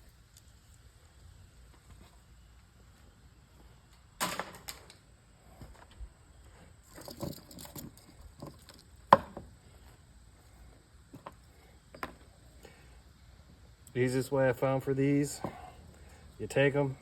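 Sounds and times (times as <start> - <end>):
tools and parts clattering: 6.8 - 8.9.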